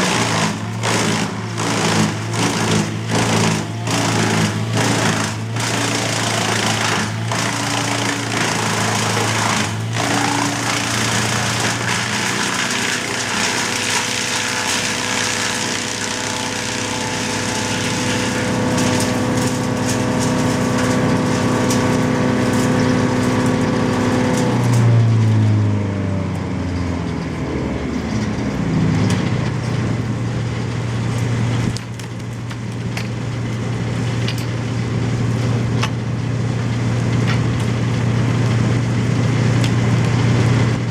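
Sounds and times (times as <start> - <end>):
small petrol engine running: 0.0 - 24.8.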